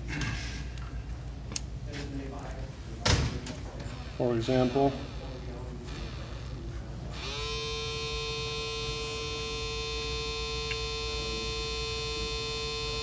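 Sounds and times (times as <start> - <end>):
small motor whining and humming: 7.2 - 13.0.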